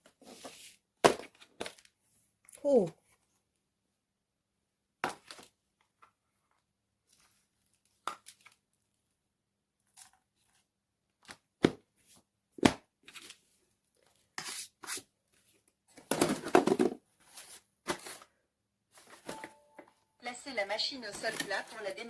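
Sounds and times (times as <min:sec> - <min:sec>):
plastic box rattling: 0:16.1 - 0:17.0.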